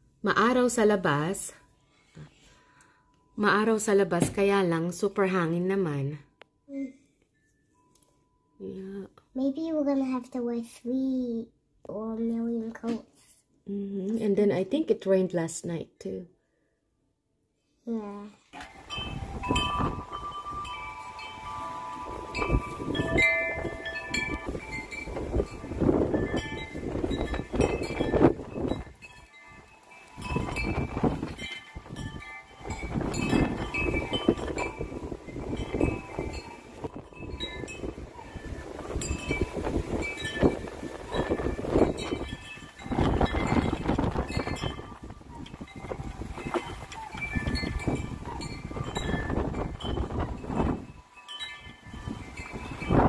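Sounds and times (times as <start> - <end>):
wind chime ringing: 0.4 - 8.9, 18.6 - 53.0
gusting wind on microphone: 18.7 - 53.0.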